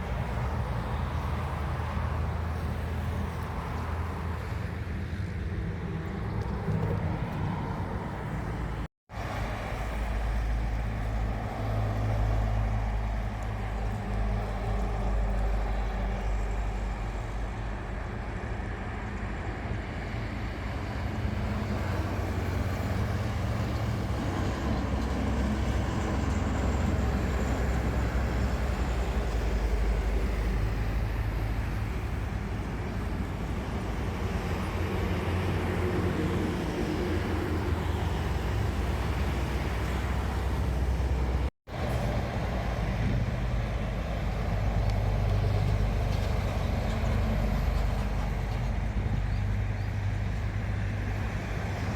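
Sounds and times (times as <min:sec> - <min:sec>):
distant engines rumbling: 0:00.0 - 0:51.9.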